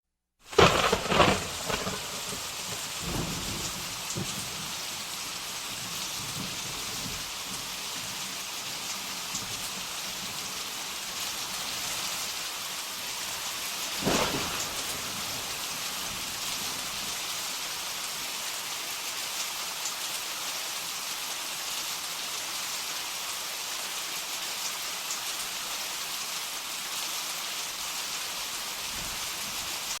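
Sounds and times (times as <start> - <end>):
heavy rain pouring: 0.4 - 30.0
sharp thunderclap: 0.5 - 4.8, 13.9 - 17.1
thunder rumbling: 0.5 - 5.1, 13.9 - 17.2.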